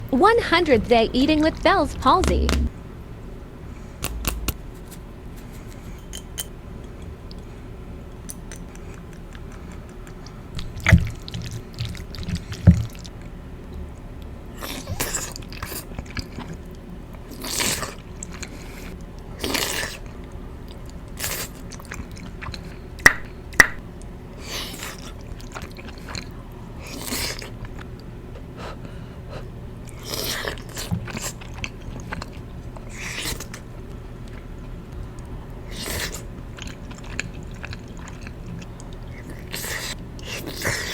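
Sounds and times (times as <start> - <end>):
low thumps: 1.8 - 2.8, 4.0 - 4.8
wet chewing mouth sounds: 3.8 - 5.0, 8.2 - 13.2, 14.6 - 23.4, 24.4 - 40.9
sharp clicks: 4.0 - 4.6.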